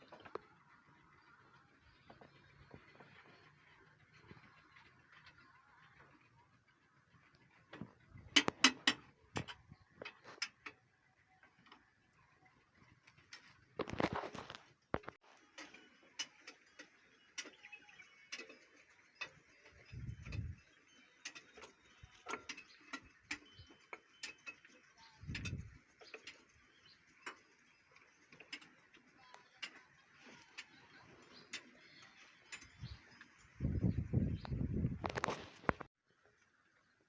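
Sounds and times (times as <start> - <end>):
tools and metal parts knocking: 7.7 - 10.9, 21.2 - 33.7.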